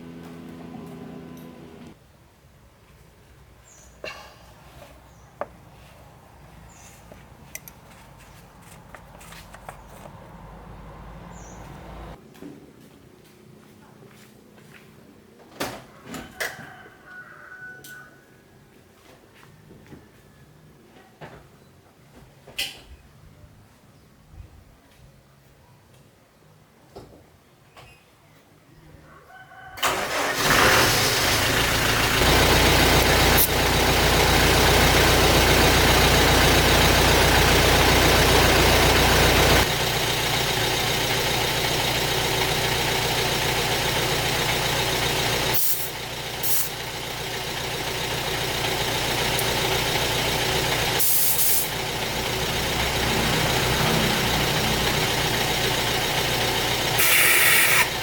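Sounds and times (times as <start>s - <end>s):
car engine starting and idling: 0.0s - 2.0s, 9.5s - 12.2s, 29.8s - 58.0s.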